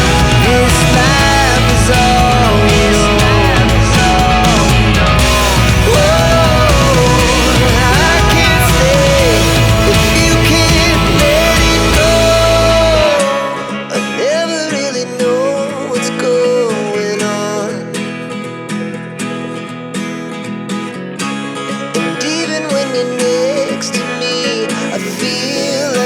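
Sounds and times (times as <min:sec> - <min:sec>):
loud music with heavy bass: 0:00.0 - 0:13.7
guitar-led music: 0:00.0 - 0:26.0.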